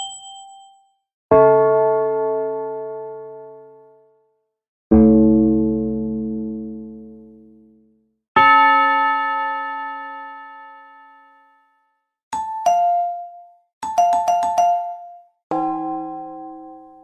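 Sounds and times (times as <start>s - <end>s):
bell-like chime tone: 0.0s - 1.0s, 12.4s - 17.0s
ding-dong chime: 0.0s - 1.0s, 12.4s - 17.0s.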